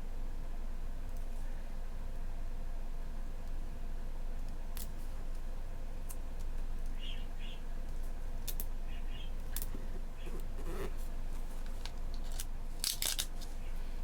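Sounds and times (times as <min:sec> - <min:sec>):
crackling rustle: 0:07.8 - 0:13.9
paper clicks and crinkles: 0:09.5 - 0:13.6.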